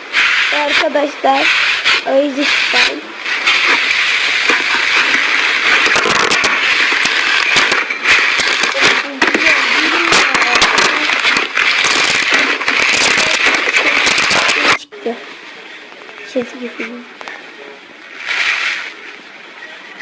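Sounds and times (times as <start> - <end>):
slime crackling and popping: 2.7 - 14.8.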